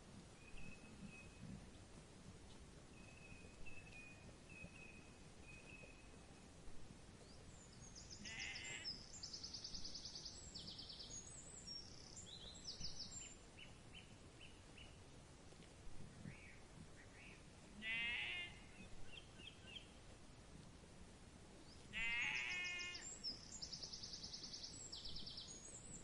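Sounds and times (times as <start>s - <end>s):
small birds chirping: 2.5s - 6.6s, 7.2s - 15.0s, 16.0s - 20.0s, 21.6s - 26.0s
sheep bleat: 8.2s - 8.9s, 17.8s - 18.7s, 22.0s - 23.0s.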